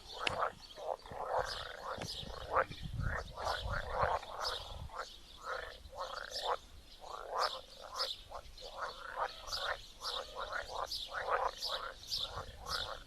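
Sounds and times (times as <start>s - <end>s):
frogs croaking: 0.0s - 13.0s.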